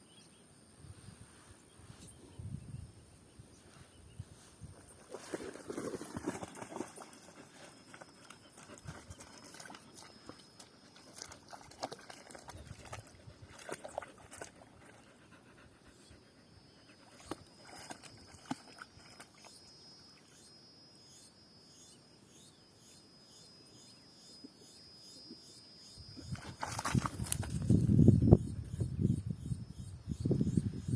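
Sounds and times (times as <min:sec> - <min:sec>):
dog panting: 0:14.8 - 0:17.1.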